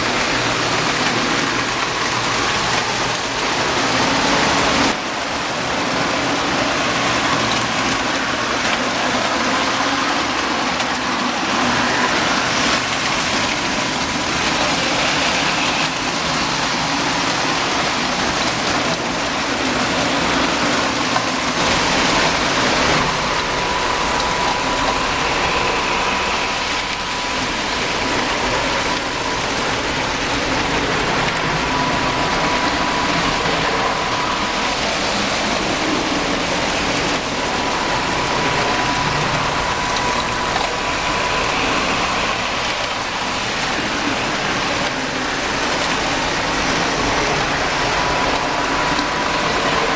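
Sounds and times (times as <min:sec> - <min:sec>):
toy train wheels rumbling: 0:00.0 - 0:49.9
faint steady whine: 0:19.3 - 0:49.9.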